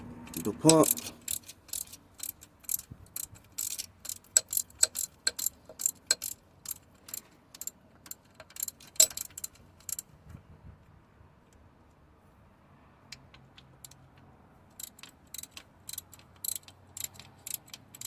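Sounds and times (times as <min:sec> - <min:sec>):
ratchet wrench clicking: 0:00.2 - 0:10.1, 0:14.7 - 0:18.0.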